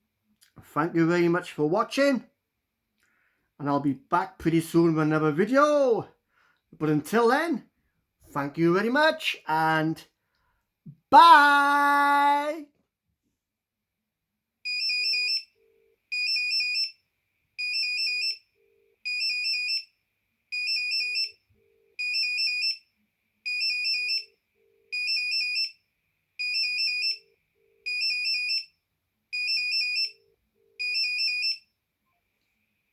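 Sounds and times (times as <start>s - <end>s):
mobile phone ringing: 14.7s - 17.0s, 20.5s - 22.8s, 26.4s - 28.7s, 29.4s - 31.7s.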